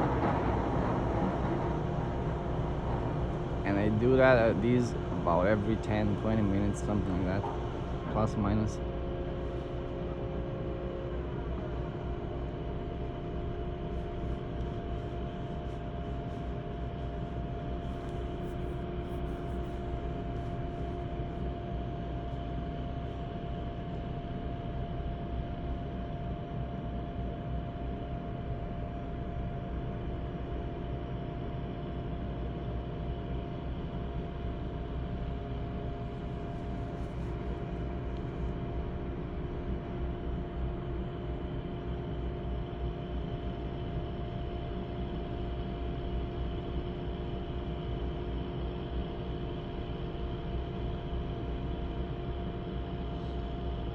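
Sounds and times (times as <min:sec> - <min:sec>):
drilling rig machinery droning: 0:00.0 - 0:21.4.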